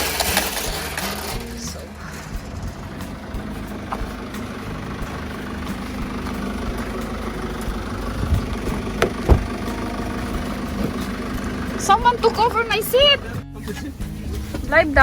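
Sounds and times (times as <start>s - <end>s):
car engine hum from cabin: 0.0s - 15.0s
short knocks: 2.4s - 11.8s.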